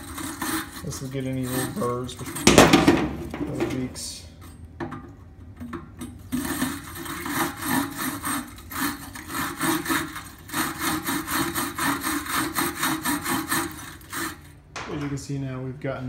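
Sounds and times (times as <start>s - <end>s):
sanding copper pipe by hand: 0.0s - 2.4s, 6.3s - 14.6s.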